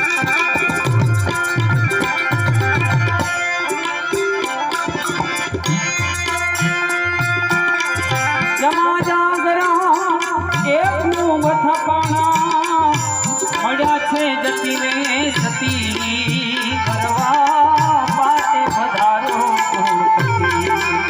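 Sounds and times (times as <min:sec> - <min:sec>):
harmonium chords: 0:00.0 - 0:21.0
tabla rhythm: 0:00.0 - 0:21.0
wavering melody line: 0:19.4 - 0:21.0.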